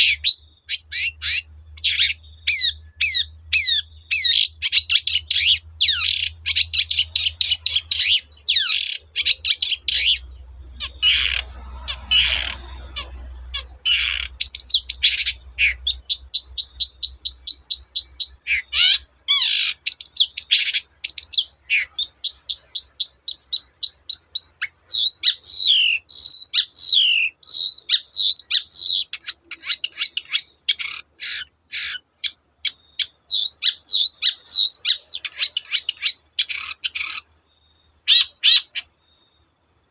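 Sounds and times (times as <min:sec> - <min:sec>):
bird singing chattering trills: 0:00.0 - 0:39.7.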